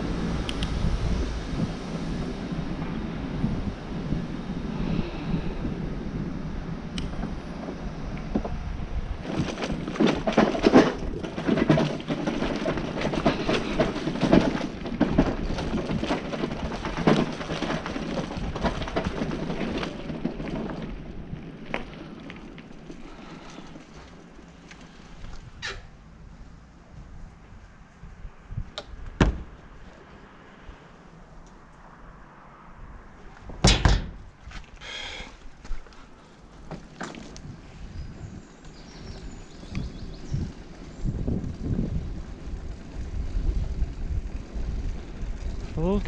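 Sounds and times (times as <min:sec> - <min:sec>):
wind rumbling on microphone: 0:00.0 - 0:46.0
clattering rattles and knocks: 0:07.0 - 0:25.8, 0:28.8 - 0:29.9, 0:33.4 - 0:34.7, 0:35.6 - 0:46.0.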